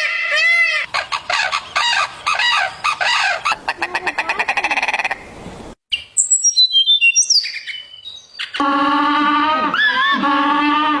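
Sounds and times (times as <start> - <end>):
birds chirping: 0.8 - 8.6
loud drawn-out animal call: 8.6 - 11.0.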